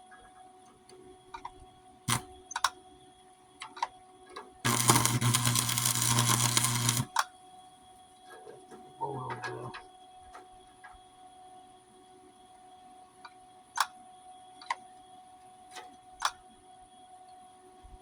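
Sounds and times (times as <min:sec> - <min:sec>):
welder arc crackling: 0:02.1 - 0:02.3, 0:04.6 - 0:07.2
welder hum: 0:02.1 - 0:02.3, 0:04.6 - 0:07.2.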